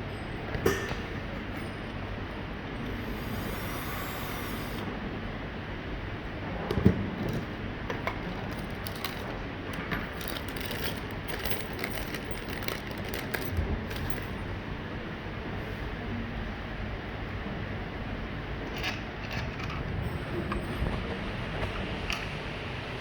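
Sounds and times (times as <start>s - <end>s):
steady background hiss: 2.8s - 5.3s.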